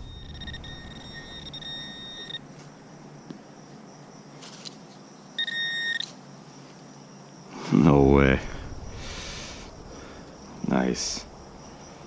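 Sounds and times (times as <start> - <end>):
metal detector electronic tone: 0.0 - 2.4, 5.4 - 6.1.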